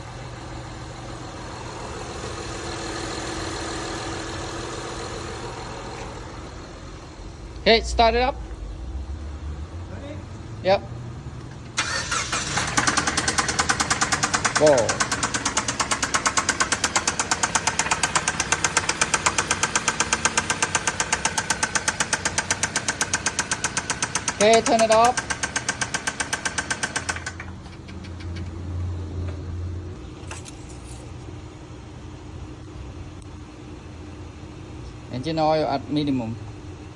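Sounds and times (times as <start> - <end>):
car engine idling: 0.0 - 29.5
rapid engine tapping: 11.4 - 28.6.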